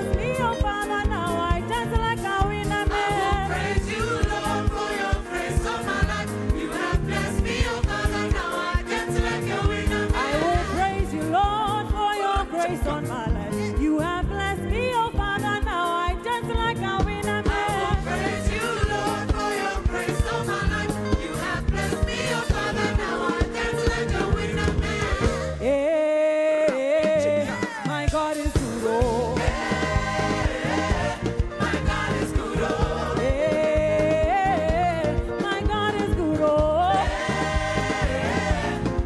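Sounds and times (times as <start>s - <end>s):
band with steady beat: 0.0s - 14.0s, 14.8s - 25.7s, 26.9s - 39.0s
choir singing: 2.4s - 12.2s, 17.4s - 25.8s, 28.6s - 35.1s, 36.7s - 39.0s.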